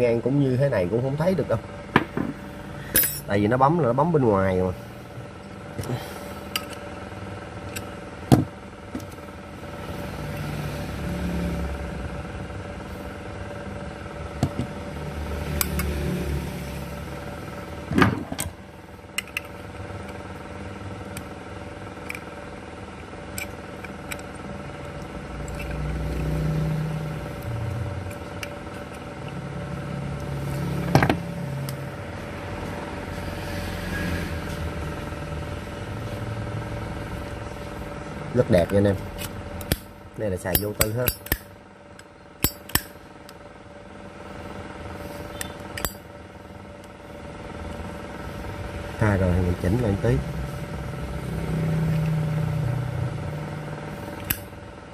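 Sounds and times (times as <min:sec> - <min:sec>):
vehicle engine hum: 0:00.0 - 0:54.9.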